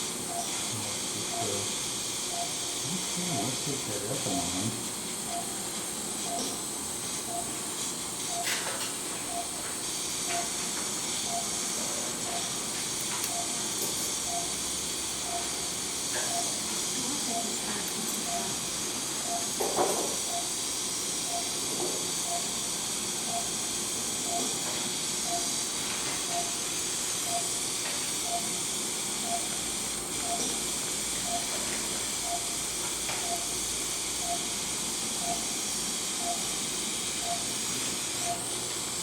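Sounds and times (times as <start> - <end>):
patient monitor beeping: 0.2 - 0.6, 1.2 - 1.6, 2.3 - 4.6, 5.3 - 5.6, 6.2 - 6.6, 7.2 - 7.6, 8.3 - 8.6, 9.3 - 9.7, 10.3 - 11.6, 12.2 - 12.6, 13.3 - 14.6, 15.2 - 20.6, 21.2 - 21.6, 22.3 - 22.6, 23.3 - 23.5, 24.2 - 24.6, 25.2 - 25.6, 26.2 - 26.6, 27.2 - 27.6, 28.2 - 28.6, 29.2 - 29.6, 30.2 - 30.6, 31.2 - 32.6, 33.2 - 33.6, 34.2 - 34.6, 35.2 - 35.5, 36.2 - 36.5, 37.2 - 37.5, 38.2 - 38.5.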